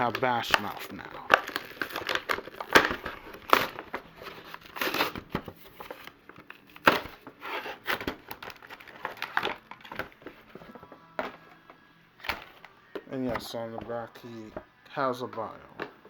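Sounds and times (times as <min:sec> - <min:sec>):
packaging cracking: 0:00.0 - 0:11.4
plastic and cardboard crinkling: 0:00.0 - 0:14.7.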